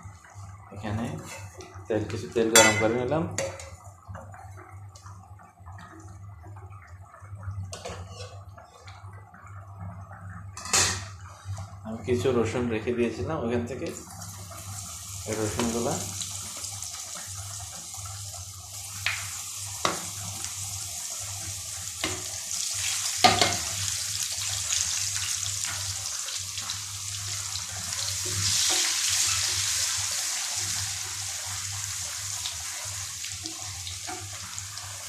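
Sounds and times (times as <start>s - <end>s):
garlic sizzling in hot oil: 14.0s - 35.0s.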